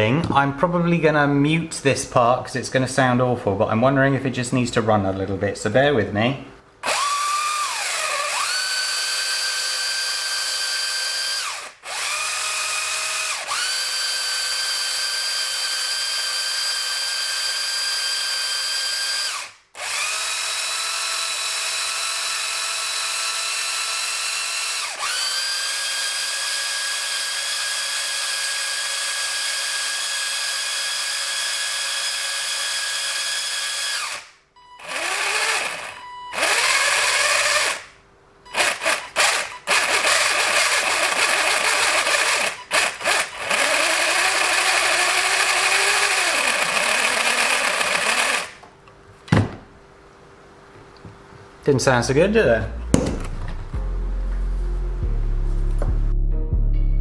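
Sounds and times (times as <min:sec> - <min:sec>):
toy car motor grinding whine: 0:06.8 - 0:37.9, 0:38.5 - 0:48.6.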